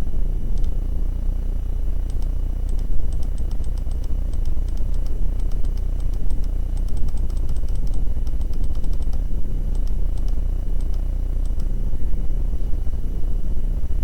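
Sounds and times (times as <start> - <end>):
low hum: 0.0 - 14.0
keyboard and mouse clicking: 0.6 - 0.8, 2.1 - 11.8.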